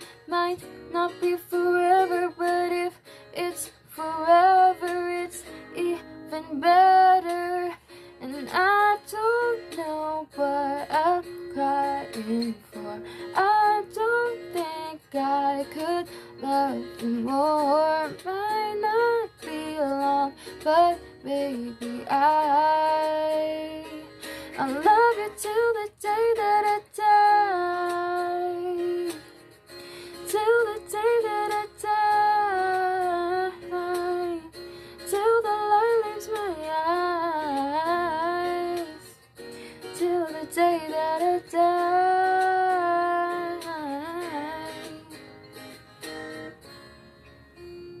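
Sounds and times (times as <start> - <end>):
acoustic guitar: 0.0 - 48.0.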